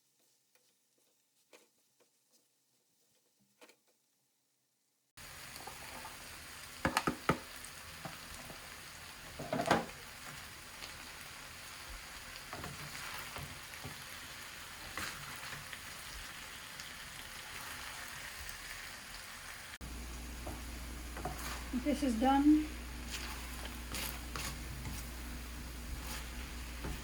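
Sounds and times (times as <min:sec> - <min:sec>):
food sizzling in a hot pan: 0:05.2 - 0:27.0
utensil stirring clatter: 0:11.9 - 0:16.2, 0:20.1 - 0:27.0.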